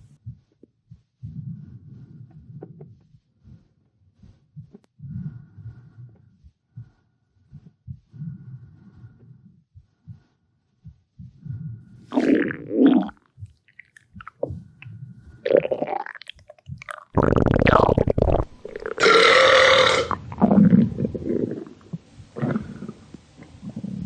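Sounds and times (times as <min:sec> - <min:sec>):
stomach gurgling: 0:11.3 - 0:24.0
person burping: 0:12.2 - 0:13.2, 0:15.5 - 0:21.7.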